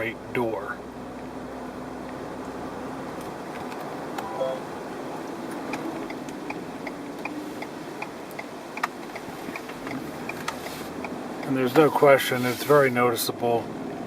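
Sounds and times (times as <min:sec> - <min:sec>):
wind rushing hiss in car cabin: 0:00.3 - 0:14.0
brief tone: 0:04.2 - 0:04.7
light ticks: 0:05.5 - 0:11.6.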